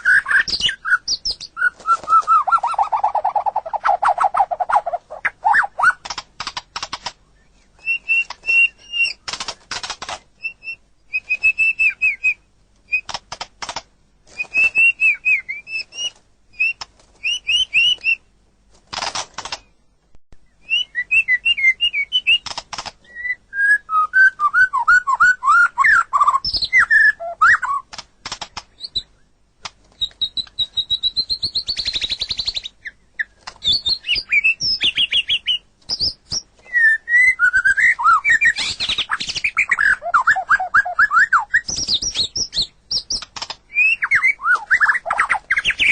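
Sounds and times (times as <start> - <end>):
songbird singing whistled notes: 0.0 - 6.0, 7.2 - 9.6, 10.4 - 13.2, 14.3 - 18.3, 19.5 - 27.9, 30.0 - 45.9
bird clicking chatter: 0.3 - 7.2, 7.8 - 10.3, 12.9 - 13.9, 18.9 - 19.7, 22.3 - 23.0, 27.6 - 28.8.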